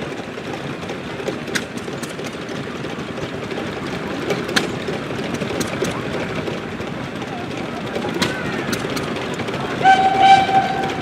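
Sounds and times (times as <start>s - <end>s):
engine running: 0.0s - 11.0s.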